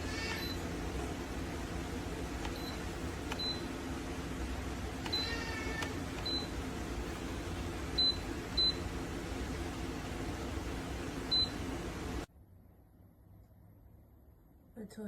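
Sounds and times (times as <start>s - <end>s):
steady low hum: 0.0s - 15.0s.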